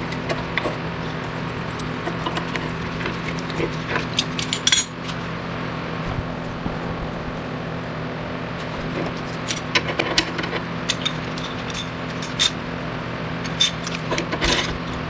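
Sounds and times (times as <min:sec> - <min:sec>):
metal tools clinking on metal: 0:00.0 - 0:05.2, 0:09.1 - 0:12.6, 0:13.4 - 0:15.0
steady low hum: 0:00.0 - 0:15.0.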